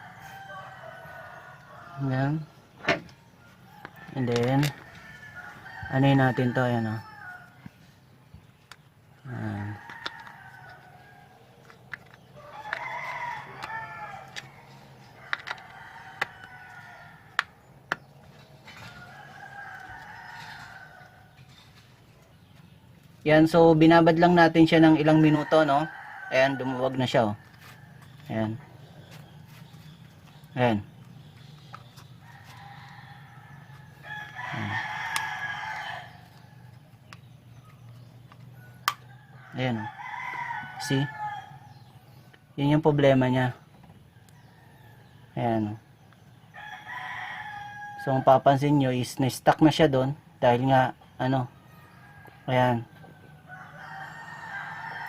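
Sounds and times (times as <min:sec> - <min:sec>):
rooster crowing: 0:00.0 - 0:02.5, 0:03.4 - 0:07.7, 0:09.2 - 0:11.5, 0:12.4 - 0:17.5, 0:18.6 - 0:21.4, 0:24.2 - 0:29.6, 0:32.2 - 0:36.8, 0:38.6 - 0:41.9, 0:46.5 - 0:48.6, 0:51.7 - 0:55.0.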